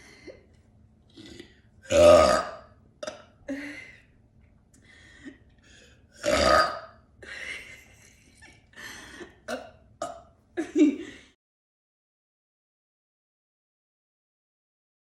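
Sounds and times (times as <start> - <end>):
woman burping: 1.2 - 3.3, 6.2 - 7.0.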